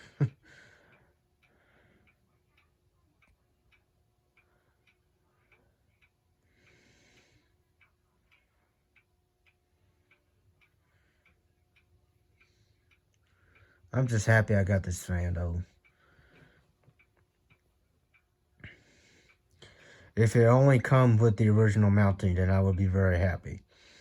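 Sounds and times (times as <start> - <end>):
ceiling fan motor hum: 0.0 - 24.0
light ticking: 0.0 - 24.0.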